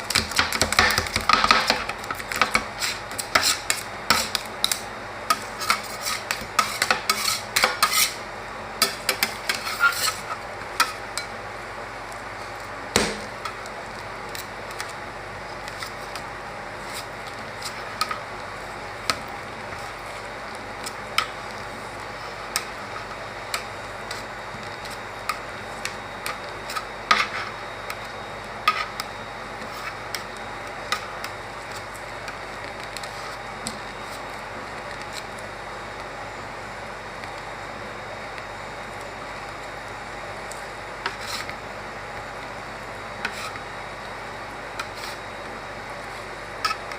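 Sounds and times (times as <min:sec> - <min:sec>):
metal spatulas chopping on steel plate: 0:00.1 - 0:08.2.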